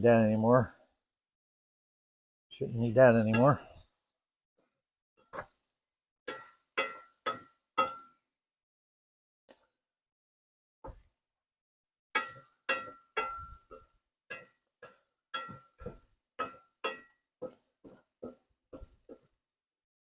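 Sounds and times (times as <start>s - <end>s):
metal utensil clinking on pot: 12.2s - 17.1s.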